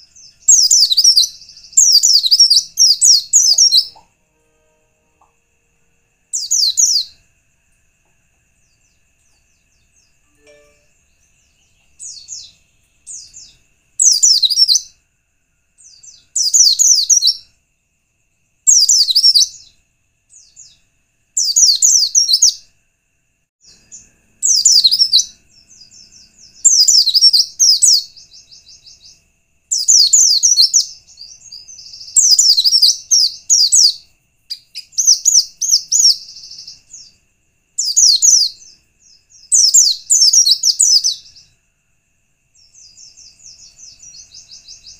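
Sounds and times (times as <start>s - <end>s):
bird twittering: 0.0s - 4.1s, 23.9s - 37.1s.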